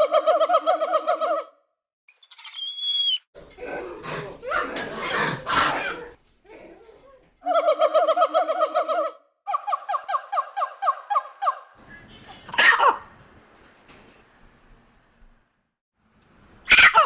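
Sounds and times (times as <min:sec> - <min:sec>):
monkey chattering: 0:02.1 - 0:03.2, 0:09.5 - 0:11.7
monkey screech: 0:02.1 - 0:03.3, 0:16.7 - 0:17.0.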